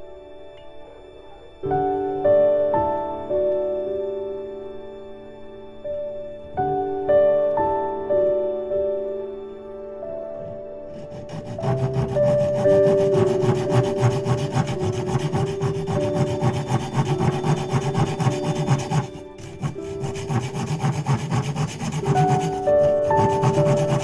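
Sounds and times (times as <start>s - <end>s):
soft background music: 0.0s - 24.0s
saw cutting wood: 10.9s - 24.0s.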